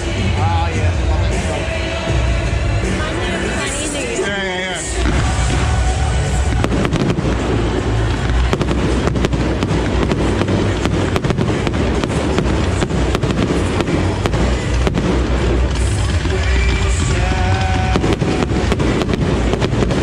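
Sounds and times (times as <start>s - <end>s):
fireworks bangs and crackles: 4.8s - 20.0s
low rumble of explosions: 5.0s - 20.0s.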